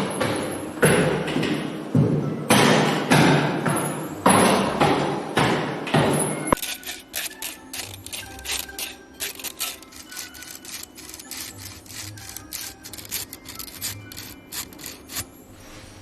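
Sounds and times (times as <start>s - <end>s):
scraping and rubbing strokes: 6.6s - 16.0s.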